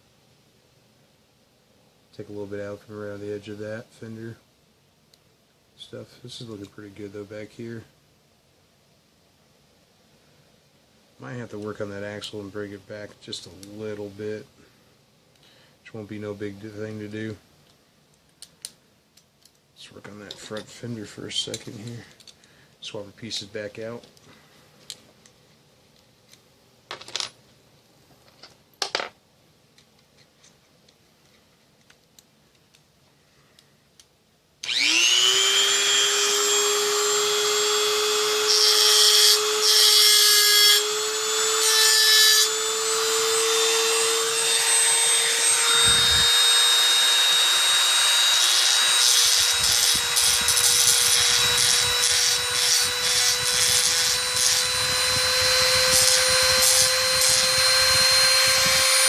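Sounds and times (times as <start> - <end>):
rotary tool grinding: 34.6 - 59.0.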